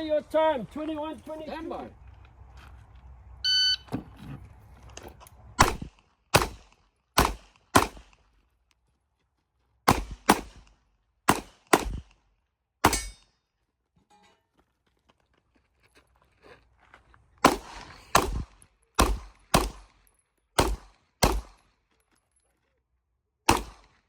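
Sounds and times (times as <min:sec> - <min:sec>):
electronic shot timer beep: 0:03.5 - 0:03.9
pistol shots: 0:05.6 - 0:08.2, 0:09.9 - 0:12.2, 0:17.4 - 0:20.0, 0:20.6 - 0:21.6, 0:23.5 - 0:24.0.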